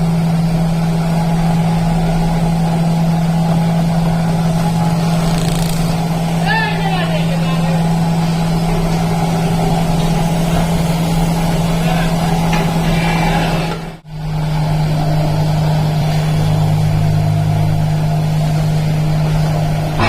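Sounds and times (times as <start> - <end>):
deeper hum: 0.0 - 20.0
factory machinery humming: 0.0 - 20.0.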